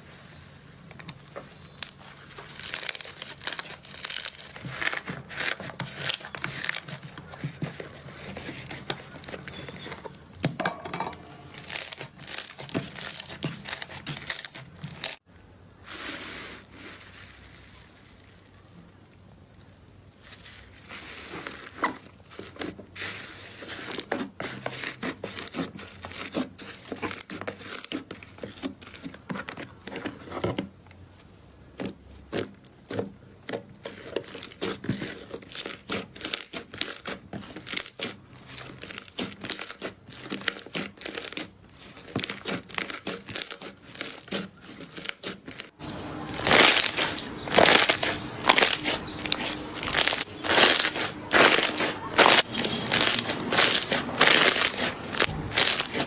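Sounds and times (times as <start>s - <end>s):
slime crackling and popping: 1.5s - 9.9s, 11.5s - 15.3s, 31.8s - 56.0s.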